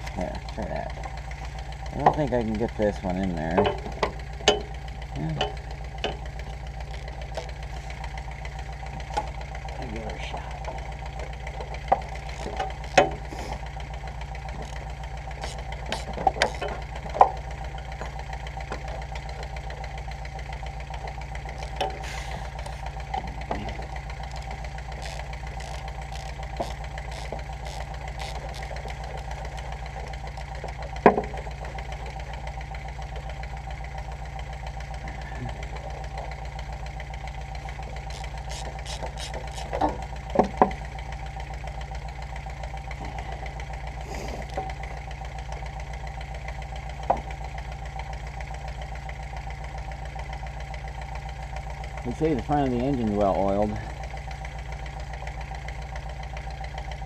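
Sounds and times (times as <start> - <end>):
steady mechanical hum: 0.0 - 57.0
metal tools clanking: 1.9 - 7.9, 14.4 - 20.0, 20.9 - 32.4.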